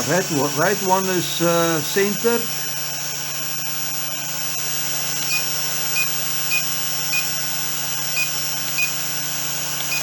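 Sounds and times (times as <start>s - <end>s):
drone motors whirring: 1.9s - 10.0s.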